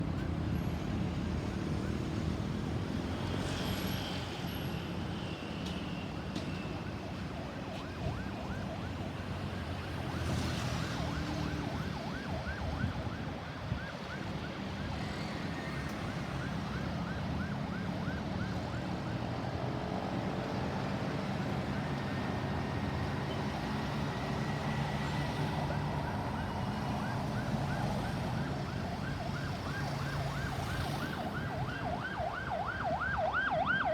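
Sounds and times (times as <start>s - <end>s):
traffic noise: 0.0s - 33.9s
ambulance siren yelping: 25.5s - 33.9s.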